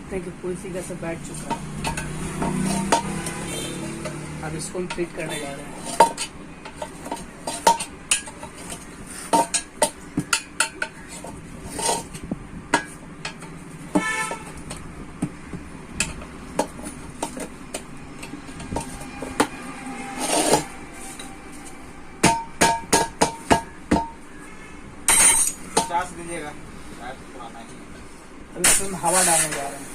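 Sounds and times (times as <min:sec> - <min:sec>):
metal scraping: 0:01.2 - 0:09.9, 0:10.7 - 0:14.8, 0:16.0 - 0:22.6, 0:24.4 - 0:26.5, 0:28.0 - 0:29.9
metal tools clanking on wheel rim: 0:01.4 - 0:14.8, 0:16.0 - 0:19.6, 0:25.1 - 0:26.5, 0:28.0 - 0:29.9.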